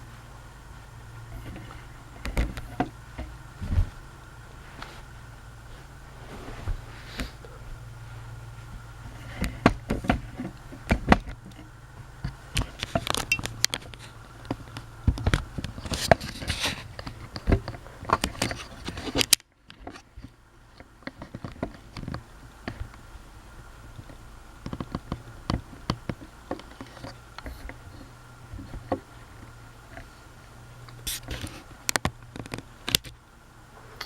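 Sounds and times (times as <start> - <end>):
ceiling fan humming: 0.0 - 34.0
sharp clicks and knocks: 1.2 - 4.0, 8.7 - 23.0, 24.0 - 27.8, 30.9 - 33.2.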